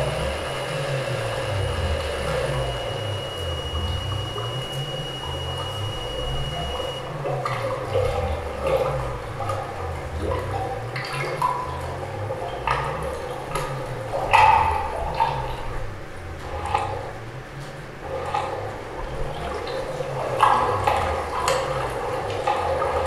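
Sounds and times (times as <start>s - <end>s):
thin high tone: 0.0s - 7.2s
low pulsing rumble: 0.0s - 23.0s
rushing water-like noises: 0.0s - 23.0s.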